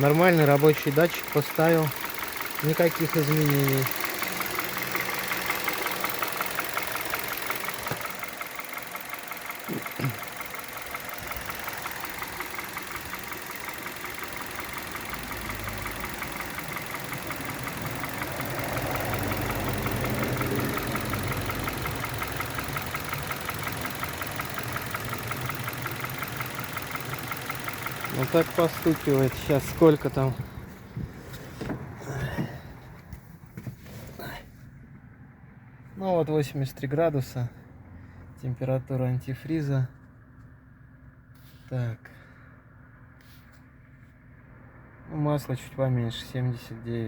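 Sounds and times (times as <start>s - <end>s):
rapid tapping engine knock: 0.0s - 31.7s
car engine idling: 0.0s - 47.0s.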